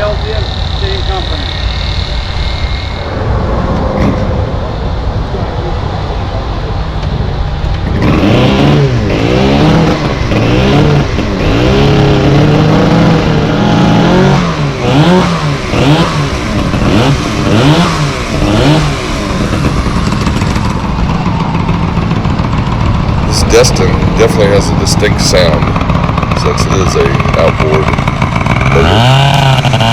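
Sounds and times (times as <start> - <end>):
chainsaw engine revving: 7.8 - 29.9.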